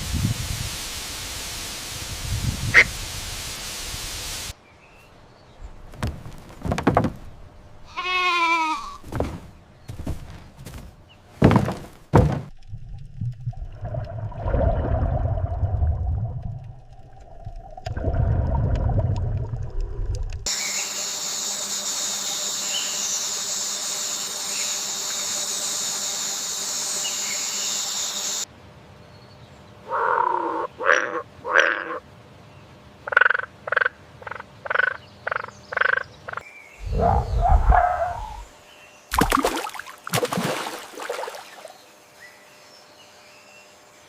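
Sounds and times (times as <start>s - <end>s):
animal croaking calls: 7.8s - 9.2s, 29.9s - 32.0s, 33.1s - 38.5s
low rumble: 12.5s - 20.5s, 36.8s - 38.5s.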